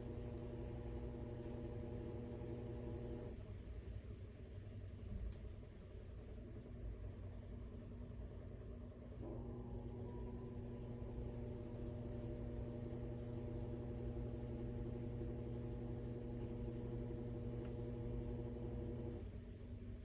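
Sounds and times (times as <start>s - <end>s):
washing machine running: 0.0s - 3.4s, 9.2s - 19.4s.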